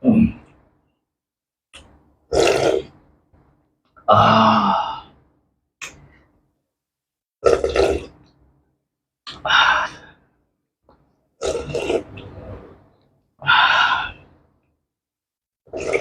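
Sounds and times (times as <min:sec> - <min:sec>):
person slurping soup: 0:02.3 - 0:02.9, 0:07.4 - 0:08.2, 0:11.4 - 0:13.0, 0:15.7 - 0:16.0.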